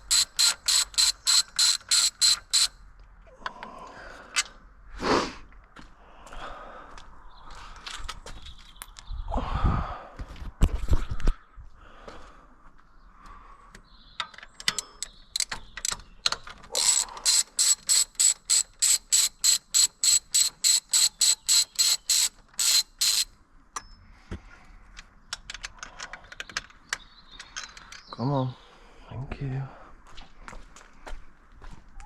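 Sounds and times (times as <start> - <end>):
socket ratchet clicking: 0.0 - 2.8, 14.4 - 23.3.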